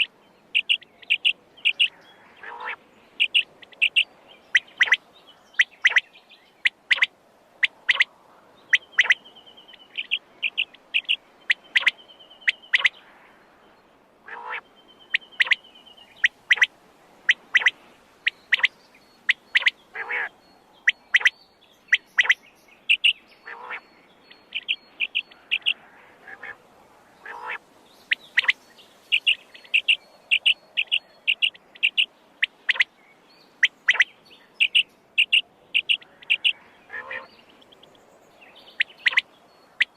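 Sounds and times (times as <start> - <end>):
quail calling: 0.0 - 8.1, 8.7 - 9.2, 9.9 - 13.0, 14.3 - 16.7, 17.3 - 18.7, 19.3 - 21.3, 21.9 - 23.8, 24.5 - 26.6, 27.2 - 32.9, 33.6 - 37.7, 38.8 - 39.2.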